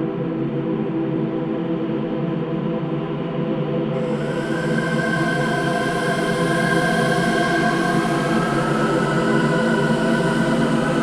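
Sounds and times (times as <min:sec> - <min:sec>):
dark ambient drone: 0:04.0 - 0:11.0.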